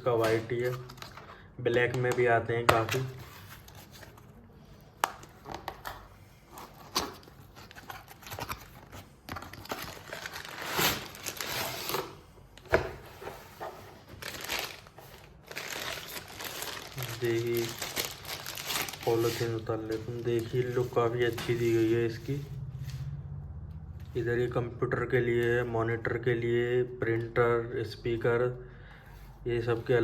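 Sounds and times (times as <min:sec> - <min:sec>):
plastic wrapping crinkling: 0:09.5 - 0:12.2, 0:14.0 - 0:20.9.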